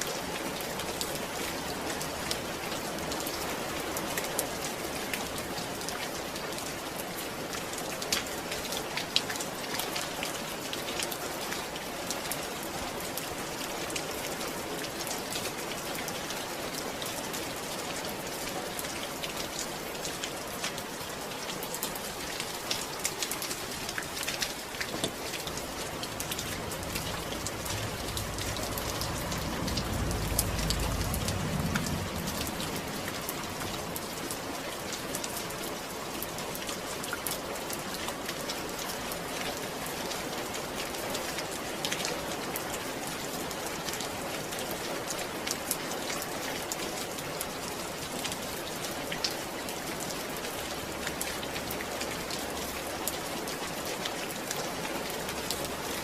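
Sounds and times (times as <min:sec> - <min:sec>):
rain falling: 0:00.0 - 0:56.0
low rumble: 0:25.1 - 0:34.7.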